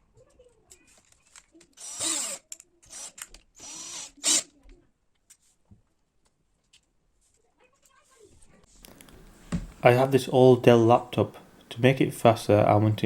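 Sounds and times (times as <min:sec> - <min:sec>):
power drill motor bursts: 0:01.8 - 0:04.5.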